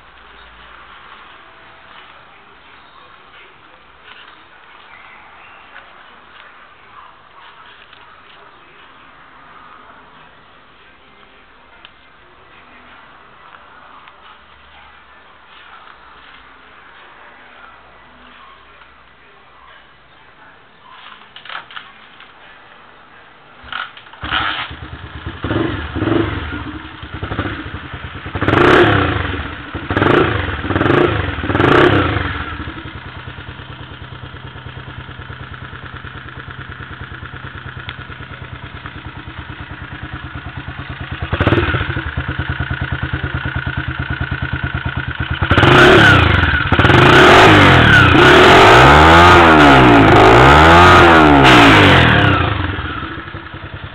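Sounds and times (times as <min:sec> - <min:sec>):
motorcycle engine revving and idling: 0:23.6 - 0:53.9.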